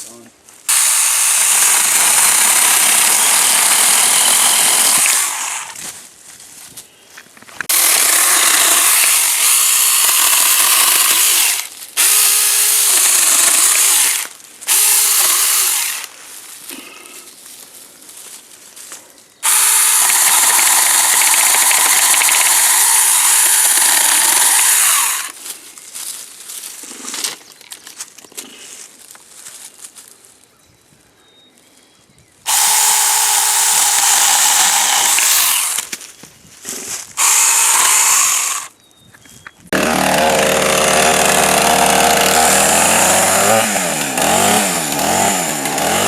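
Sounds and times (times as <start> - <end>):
electric chainsaw cutting wood: 0.7 - 5.8, 7.7 - 16.1, 19.4 - 25.4, 32.5 - 35.9, 37.2 - 38.7, 39.7 - 46.0.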